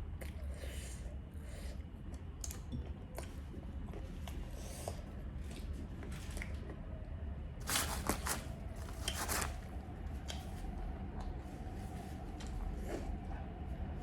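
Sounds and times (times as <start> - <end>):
crinkly rustling: 7.6 - 9.8.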